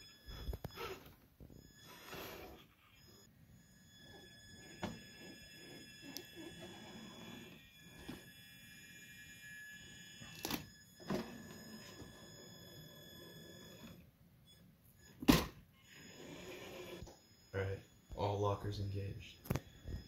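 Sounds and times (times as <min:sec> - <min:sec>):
electric motor whining: 0:00.0 - 0:14.0, 0:15.8 - 0:17.5.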